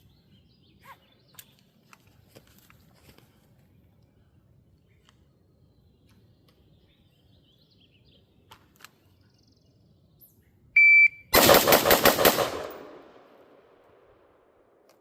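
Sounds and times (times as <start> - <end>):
shot timer beep: 10.8 - 11.3
rapid gunshots: 11.4 - 13.3.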